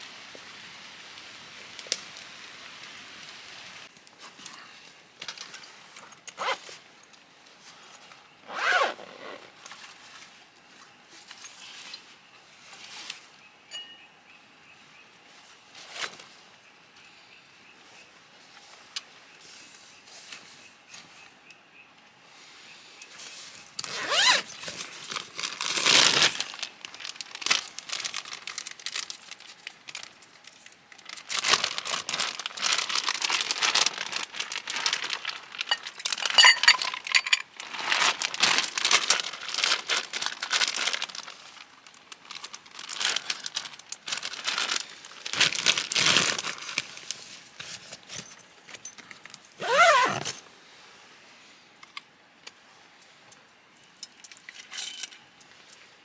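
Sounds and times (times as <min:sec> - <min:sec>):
crinkling and rustling: 0:01.2 - 0:13.3, 0:23.1 - 0:50.5.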